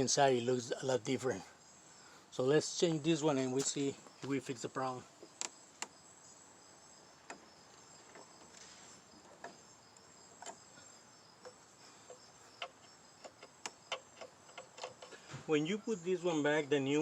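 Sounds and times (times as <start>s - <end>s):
small plastic parts clicking: 11.4s - 15.2s.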